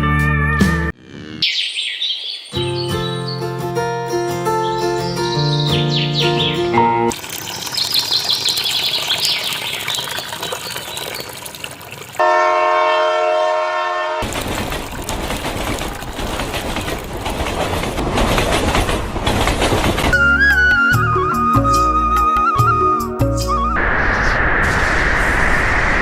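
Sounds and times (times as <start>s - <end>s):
train horn blast: 12.2s - 14.3s
train rattling past: 14.0s - 22.1s.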